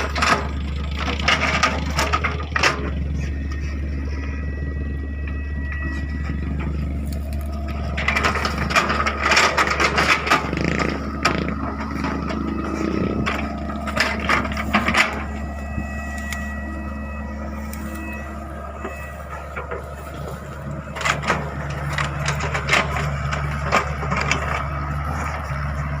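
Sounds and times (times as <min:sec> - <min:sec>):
excavator engine running: 0:00.0 - 0:26.0
wood cracking and splintering: 0:06.9 - 0:15.4.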